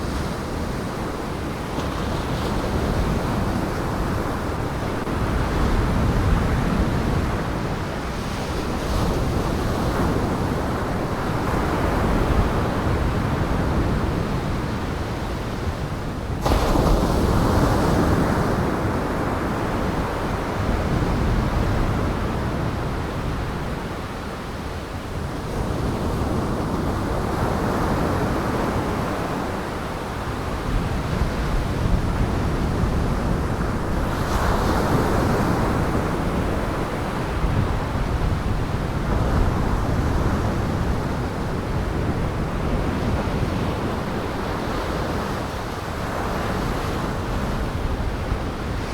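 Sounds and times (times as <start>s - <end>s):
high wind: 0.0s - 48.9s
wind buffeting microphone: 25.1s - 48.9s.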